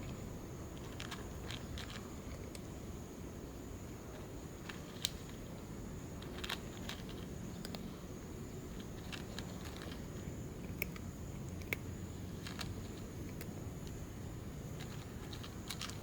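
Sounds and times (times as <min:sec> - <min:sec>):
low steady hum: 0:00.0 - 0:16.0
cat chewing food: 0:08.8 - 0:13.6.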